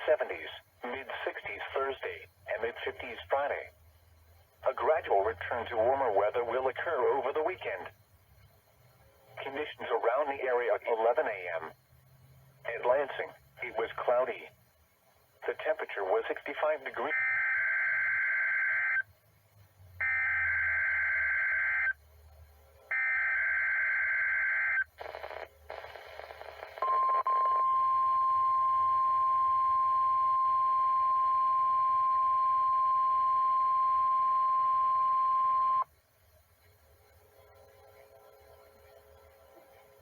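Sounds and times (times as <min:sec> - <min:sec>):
warbling data tone bursts: 0:15.6 - 0:19.1, 0:20.0 - 0:22.0
steady warning alarm tone: 0:16.2 - 0:19.1, 0:20.0 - 0:22.0, 0:22.9 - 0:25.4.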